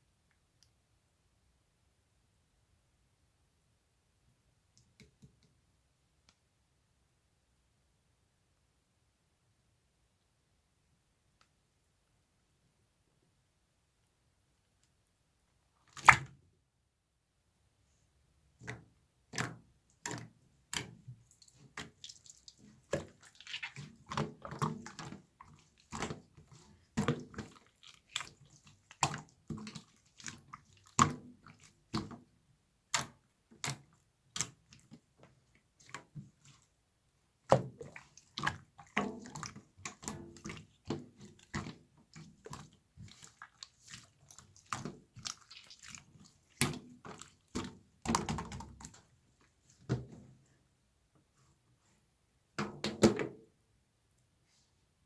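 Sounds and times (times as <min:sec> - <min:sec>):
slime squelching: 0:19.4 - 0:32.3, 0:32.9 - 0:49.8.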